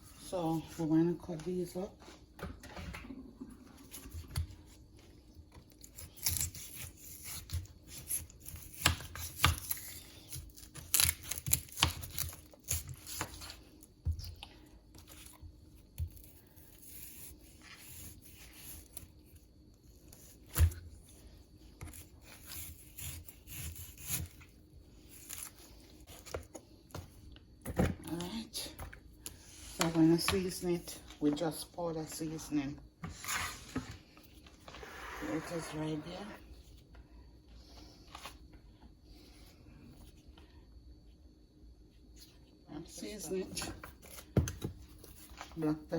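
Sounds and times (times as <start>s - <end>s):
meat tearing and scraping: 5.7s - 13.4s.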